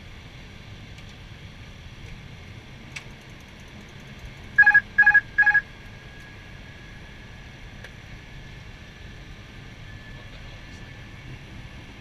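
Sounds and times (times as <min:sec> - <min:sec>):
cockpit hum: 0:00.2 - 0:12.0
short electronic beeps: 0:04.6 - 0:05.6.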